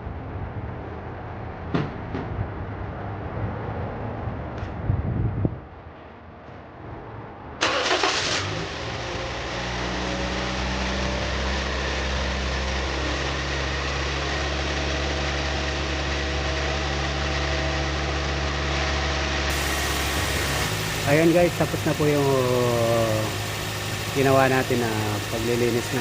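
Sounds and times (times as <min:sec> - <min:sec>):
car engine cranking: 0:07.6 - 0:08.9, 0:19.5 - 0:26.0
car engine idling: 0:07.6 - 0:26.0.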